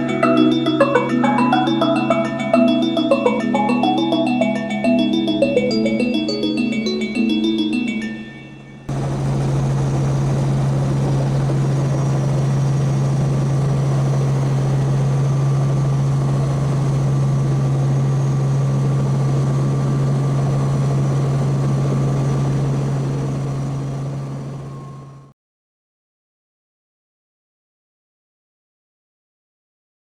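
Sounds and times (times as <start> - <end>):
helicopter in flight: 0.0 - 25.3.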